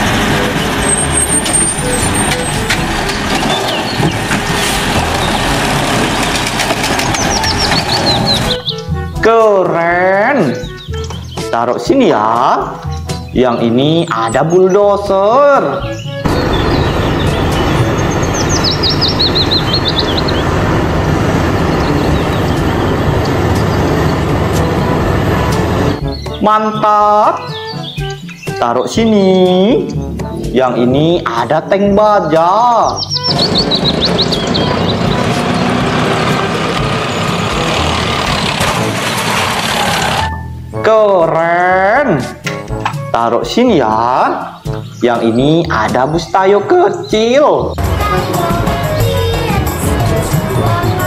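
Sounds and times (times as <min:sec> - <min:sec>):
truck engine running: 0:00.0 - 0:09.2, 0:16.1 - 0:26.2, 0:33.0 - 0:40.4, 0:47.8 - 0:51.0
bird chirping: 0:00.4 - 0:05.6, 0:06.8 - 0:09.1, 0:10.4 - 0:11.9, 0:12.6 - 0:25.0, 0:25.6 - 0:30.9, 0:31.5 - 0:36.2, 0:44.0 - 0:47.8
low outdoor rumble: 0:16.2 - 0:26.2.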